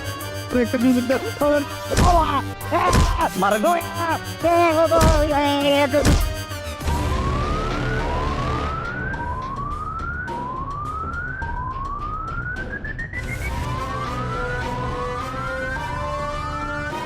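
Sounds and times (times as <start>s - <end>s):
police siren sweeping: 6.8s - 17.0s.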